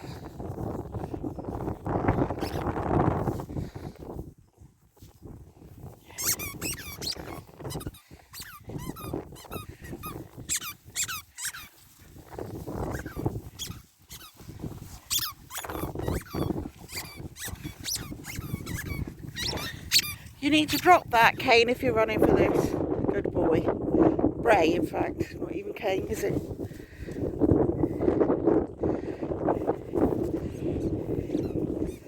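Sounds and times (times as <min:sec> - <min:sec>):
dog chewing squeaky ball: 0:02.3 - 0:02.6, 0:06.2 - 0:11.8, 0:12.8 - 0:14.4, 0:15.0 - 0:20.4
high-pitched toy squeaks: 0:06.2 - 0:11.7, 0:12.9 - 0:14.4, 0:15.1 - 0:20.2.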